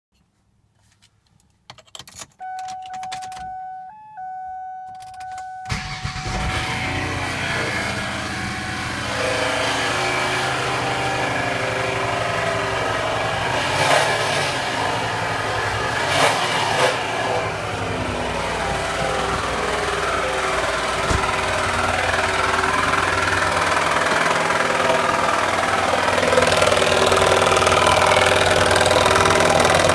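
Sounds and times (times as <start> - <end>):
car engine starting and running: 1.6 - 29.9
electronic warning chime: 2.4 - 6.1, 17.2 - 22.5
engine knock: 18.6 - 29.9.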